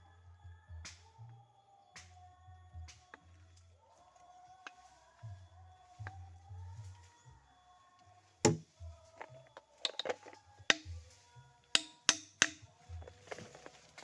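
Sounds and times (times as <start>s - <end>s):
faint background music: 0.0s - 14.0s.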